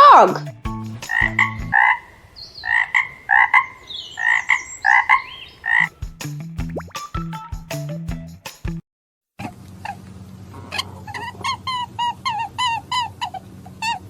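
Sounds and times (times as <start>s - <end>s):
short musical notes: 0.0s - 1.8s, 5.9s - 8.8s
frog croaking: 1.1s - 5.9s.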